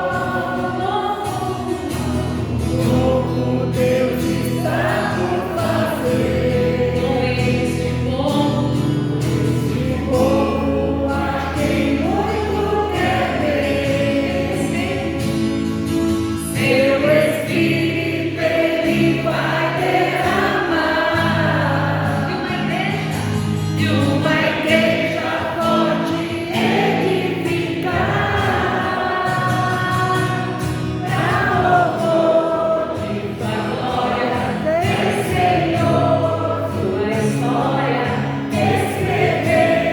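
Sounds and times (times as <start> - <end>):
group of voices singing: 0.0 - 39.9.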